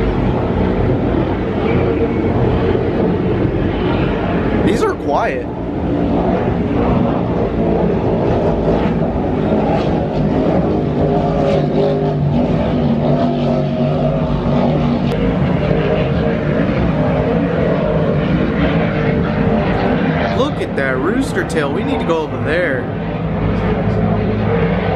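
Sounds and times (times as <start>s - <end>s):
powerboat engines droning: 0.0s - 24.9s.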